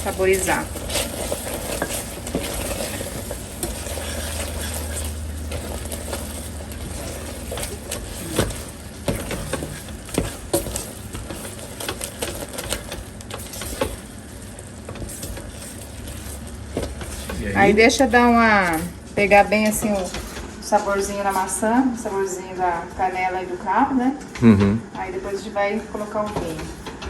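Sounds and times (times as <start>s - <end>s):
fruit sizzling in sugar: 0.0s - 20.5s.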